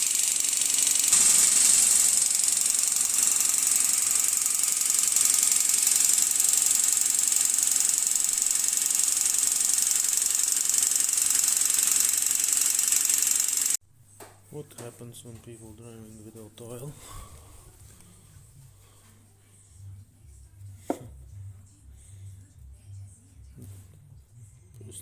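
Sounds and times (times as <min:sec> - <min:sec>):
engine metallic knocking rattle: 0:00.0 - 0:13.8.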